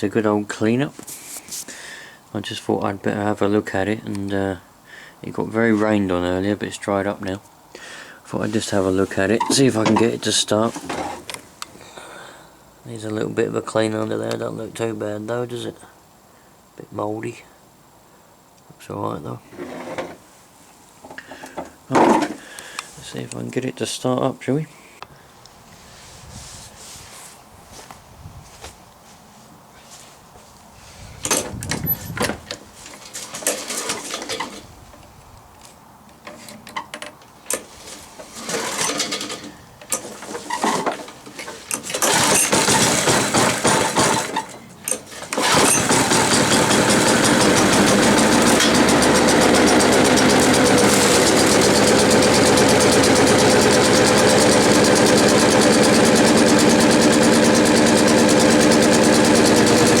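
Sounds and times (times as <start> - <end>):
lawn mower engine running: 33.0 - 34.6, 37.8 - 60.0
recoil starter tugs: 37.5 - 60.0.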